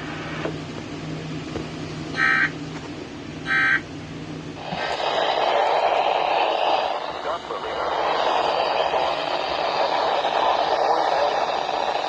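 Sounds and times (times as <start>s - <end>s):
steady low hum: 0.0s - 12.0s
electronic data tones warbling: 2.2s - 2.5s
loud noise hiss: 4.6s - 12.0s.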